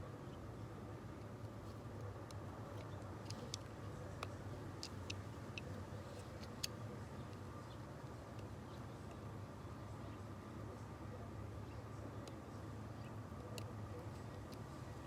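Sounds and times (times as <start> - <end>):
steady low hum: 0.0 - 15.0
light clicks of hand tools: 2.2 - 7.4.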